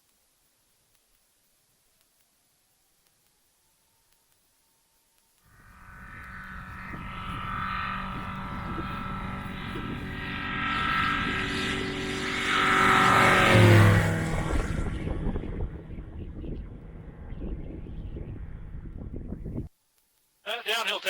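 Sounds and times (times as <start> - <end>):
light aircraft engine and propeller: 5.5 - 19.7.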